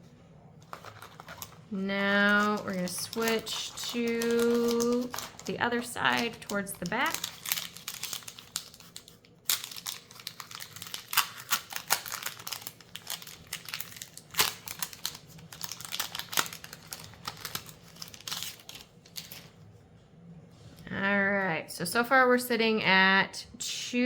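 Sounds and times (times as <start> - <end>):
foil wrapper crinkling: 0.6 - 19.6.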